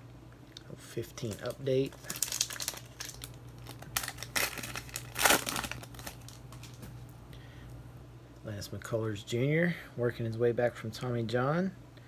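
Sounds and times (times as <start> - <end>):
wrapper tearing and crinkling: 1.2 - 6.8.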